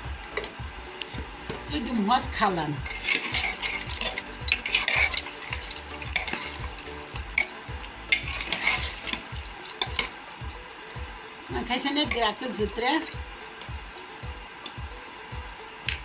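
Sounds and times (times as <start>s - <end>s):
spoon scraping metal pot: 2.6s - 14.8s.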